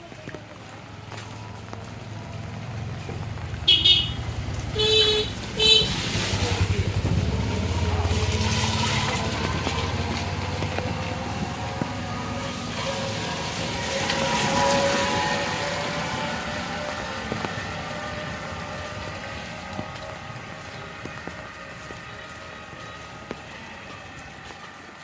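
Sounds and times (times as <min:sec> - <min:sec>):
vehicle engine passing: 0:01.4 - 0:24.2
car horn honks: 0:03.7 - 0:04.2, 0:04.8 - 0:06.1.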